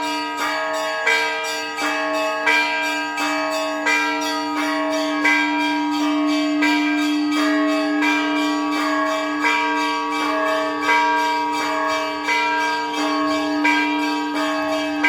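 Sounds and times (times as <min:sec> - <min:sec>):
large bell ringing: 0:00.0 - 0:15.0
small church bells ringing: 0:00.0 - 0:15.0.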